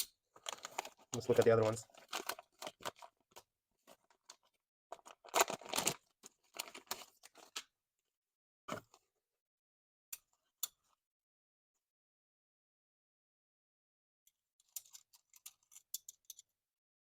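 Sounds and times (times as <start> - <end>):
plastic packaging crinkling: 0.4 - 3.4, 4.0 - 7.6.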